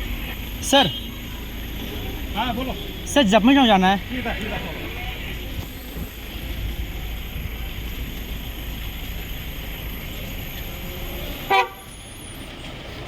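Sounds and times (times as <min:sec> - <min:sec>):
low rumble of street traffic: 0:00.0 - 0:13.0
vehicle horn toot: 0:00.1 - 0:03.7, 0:11.4 - 0:12.0.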